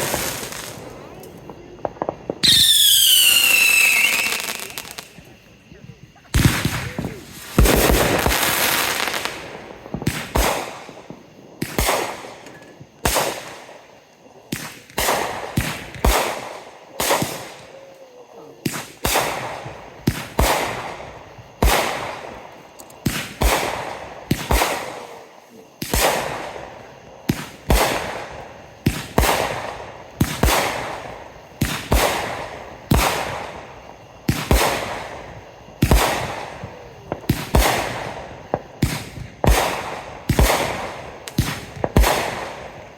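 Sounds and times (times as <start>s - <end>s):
fireworks bangs echoing: 0.0s - 5.3s, 6.3s - 13.9s, 14.5s - 17.8s, 18.6s - 42.9s.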